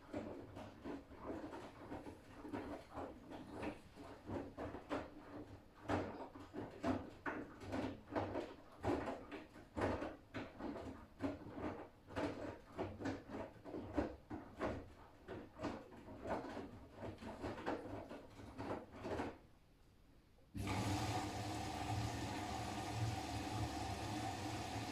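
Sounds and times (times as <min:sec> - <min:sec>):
washing machine drum tumbling laundry: 0:20.6 - 0:24.9.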